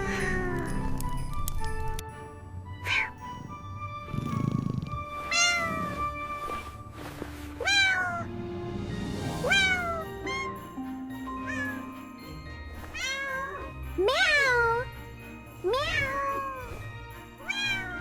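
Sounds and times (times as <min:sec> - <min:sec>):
soft background music: 0:00.0 - 0:18.0
kitten meowing: 0:02.8 - 0:03.2, 0:07.6 - 0:08.3, 0:09.4 - 0:10.5.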